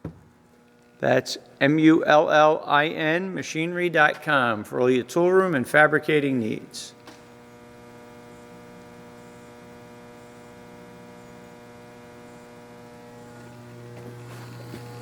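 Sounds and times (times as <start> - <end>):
electric motor humming: 4.3 - 15.0.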